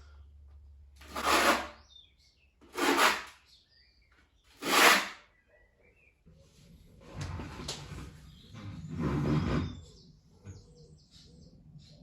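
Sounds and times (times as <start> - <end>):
trowel scraping adhesive on wall: 1.0 - 1.8, 2.7 - 3.4, 4.6 - 5.3.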